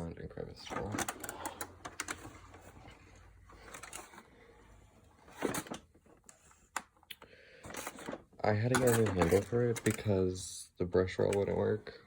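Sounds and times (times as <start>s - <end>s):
objects clicking and rustling: 5.3s - 10.2s.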